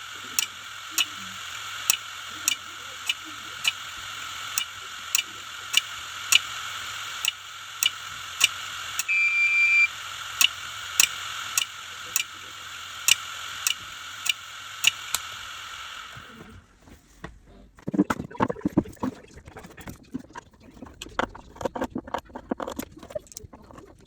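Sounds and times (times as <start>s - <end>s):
hard drive head clicking: 0.0s - 15.4s
hard drive whirring: 0.0s - 17.0s
short beep: 9.0s - 9.9s.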